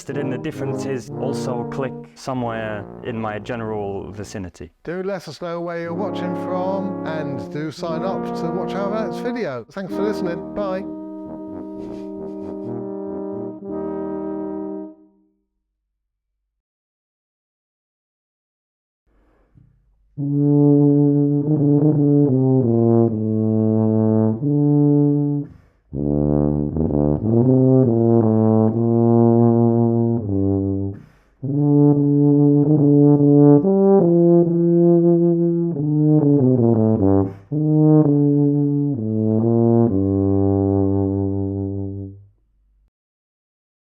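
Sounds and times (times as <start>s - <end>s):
tuba playing solo melody: 0.0s - 3.7s, 5.8s - 15.2s, 20.2s - 42.3s.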